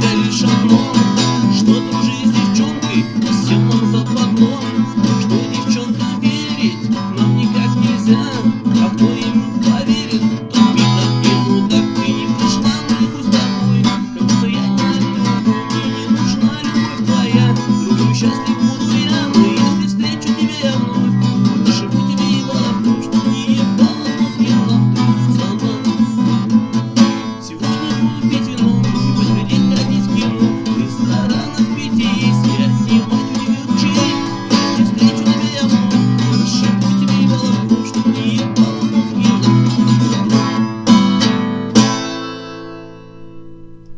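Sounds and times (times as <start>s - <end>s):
acoustic guitar strumming: 0.0s - 43.9s.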